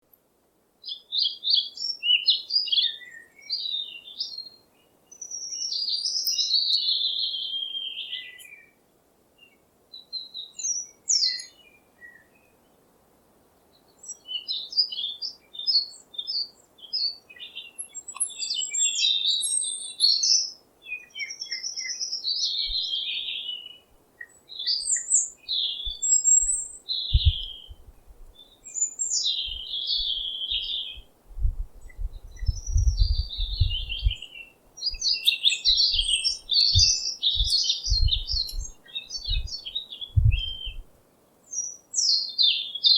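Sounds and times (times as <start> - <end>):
songbirds chirping and warbling: 0.8 - 42.9
low thumps: 31.3 - 34.2, 36.8 - 38.7, 40.2 - 40.8.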